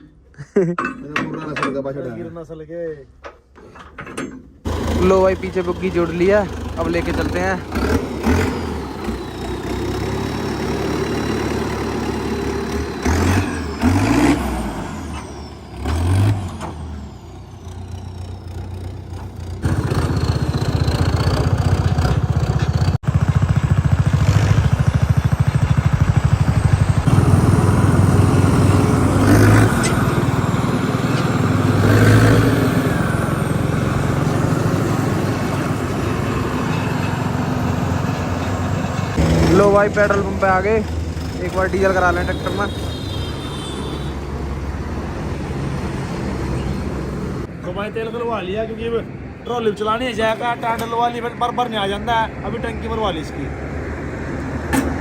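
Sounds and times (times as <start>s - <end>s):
tractor diesel engine running: 4.7s - 47.6s.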